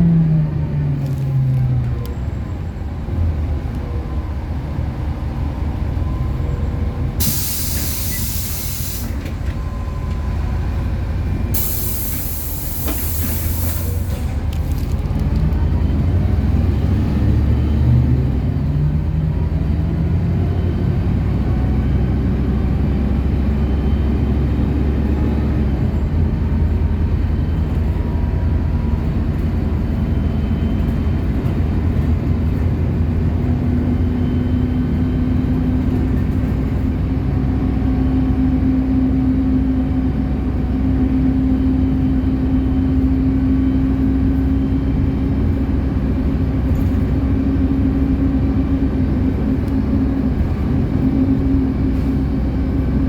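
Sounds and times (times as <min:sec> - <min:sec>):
bus engine running: 0:00.0 - 0:53.0
compressed air hiss: 0:07.2 - 0:09.2, 0:11.6 - 0:14.3.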